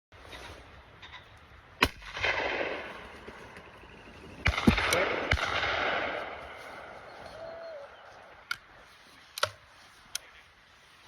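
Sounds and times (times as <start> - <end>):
gunshots with rolling echo: 1.8 - 7.2.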